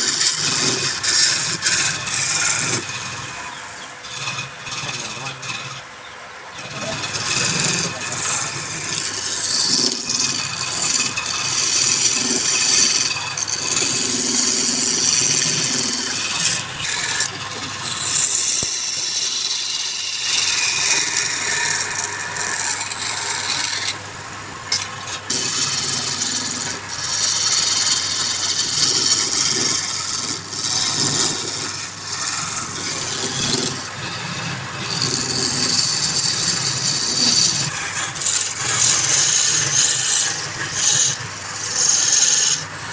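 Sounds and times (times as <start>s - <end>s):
gouge scraping wood on lathe: 0.0s - 24.0s, 24.6s - 42.9s.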